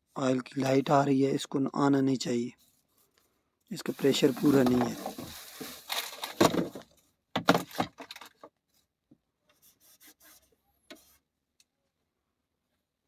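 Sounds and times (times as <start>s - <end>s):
light clicks and rubbing: 2.7s - 6.4s.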